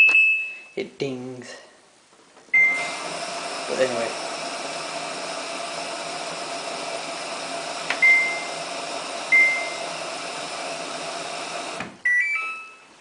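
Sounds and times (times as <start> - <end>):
short high beeps: 12.0 - 12.9.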